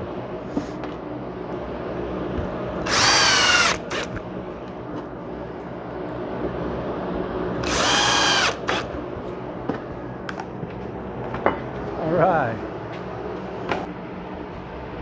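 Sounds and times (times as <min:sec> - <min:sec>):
steady hum: 0:00.0 - 0:15.0
power drill whining: 0:02.8 - 0:04.1, 0:07.6 - 0:08.9.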